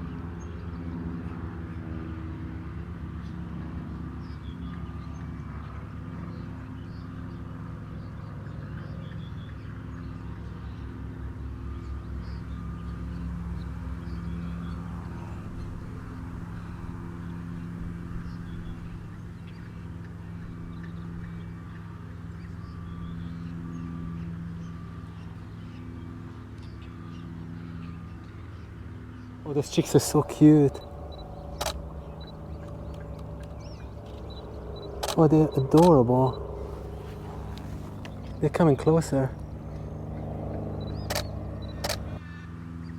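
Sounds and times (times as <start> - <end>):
low droning hum: 9.9 - 42.2
faint bird calls and peeps: 11.7 - 42.2.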